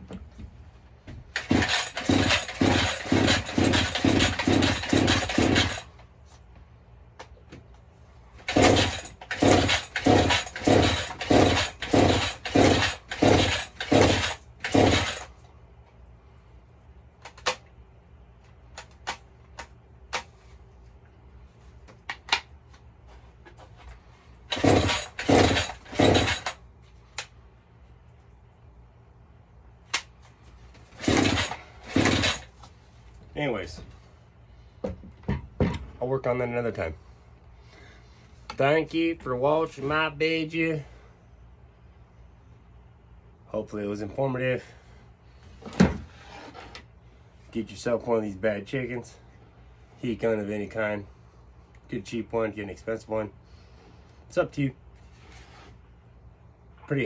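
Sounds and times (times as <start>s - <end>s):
chainsaw starter rope pulls: 1.3s - 6.0s, 8.4s - 15.4s, 24.4s - 26.6s, 30.7s - 32.7s.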